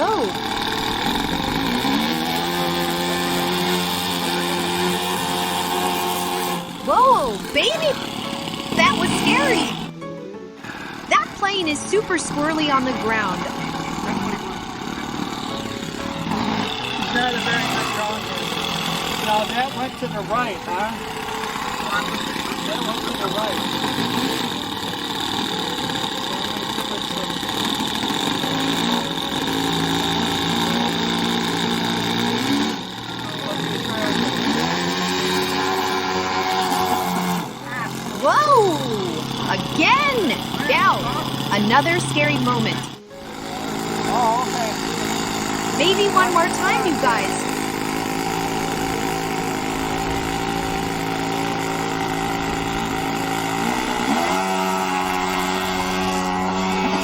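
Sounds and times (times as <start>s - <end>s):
model airplane engine running: 0.0s - 57.0s.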